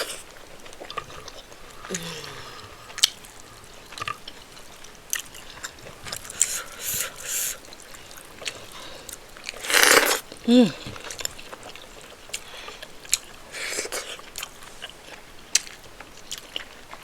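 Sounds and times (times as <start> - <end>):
wet chewing and mouth smacking: 0.0 - 17.0
slurp or sharp breath: 1.1 - 3.9, 6.3 - 7.6.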